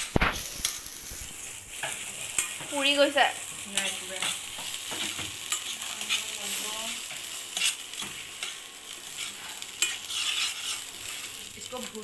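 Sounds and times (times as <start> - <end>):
spatula scraping and knocking a pan: 0.0 - 11.4
onions sizzling in a pan: 0.0 - 12.0.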